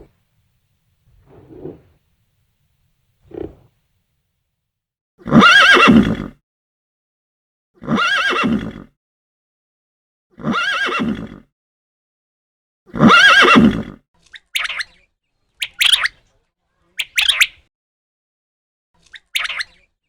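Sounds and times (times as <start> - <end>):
horse whinnying: 1.1 - 2.0, 3.2 - 3.7, 5.3 - 6.3, 7.8 - 8.9, 10.4 - 11.4, 13.0 - 14.0
bird calling: 3.2 - 3.7.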